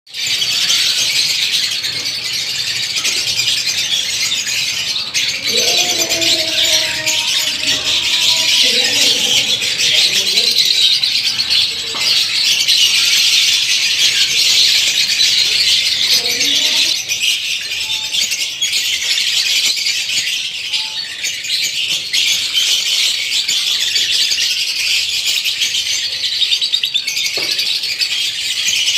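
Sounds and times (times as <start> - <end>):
lovebirds chirping and squawking: 0.1 - 28.9.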